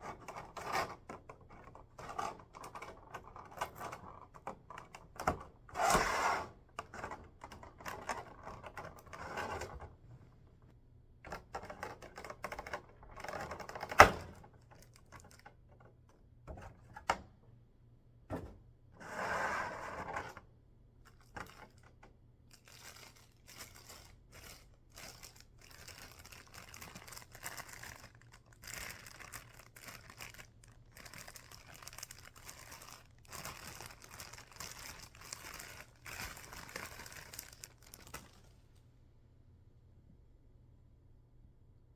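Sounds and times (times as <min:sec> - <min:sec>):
packaging rustling and tearing: 0:22.5 - 0:38.7.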